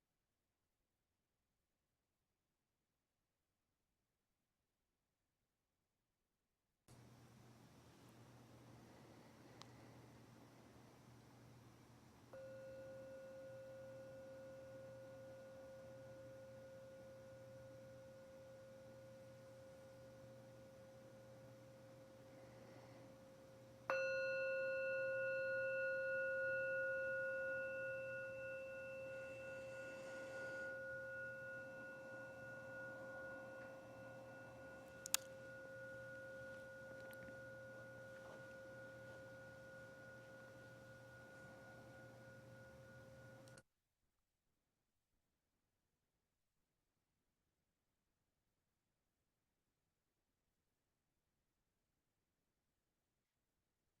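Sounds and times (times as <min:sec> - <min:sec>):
meditation bowl bell ringing: 0:12.3 - 0:43.6
small click: 0:35.0 - 0:35.4.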